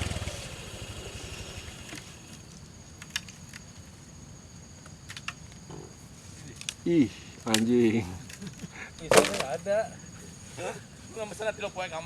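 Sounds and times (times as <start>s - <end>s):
motorcycle engine idling: 0.0s - 2.0s.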